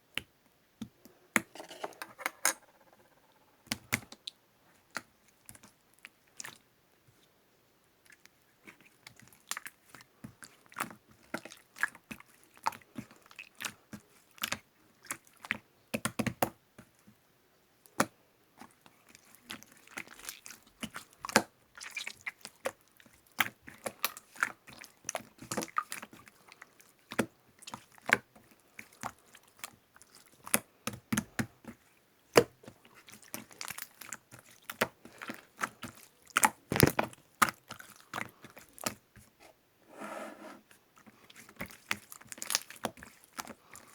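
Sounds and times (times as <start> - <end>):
hands squishing slime: 18.0 - 39.0, 41.0 - 43.9.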